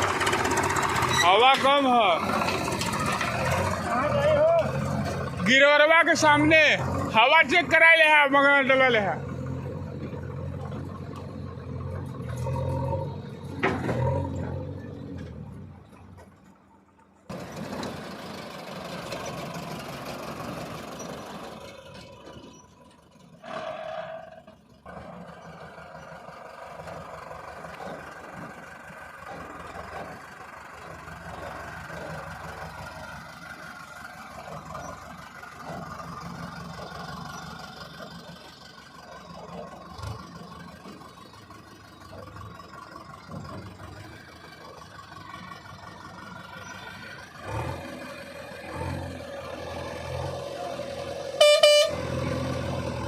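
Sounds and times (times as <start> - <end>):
heavy vehicle engine running: 0.0 - 53.0
brief higher tone: 51.4 - 52.0.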